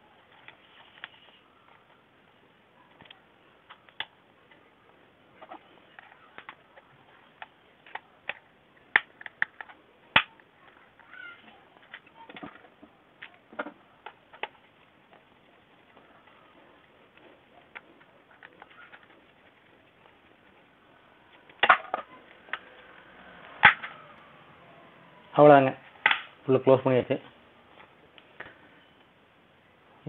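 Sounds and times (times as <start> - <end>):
plastic parts clicking and knocking: 5.4 - 16.1, 21.3 - 24.0.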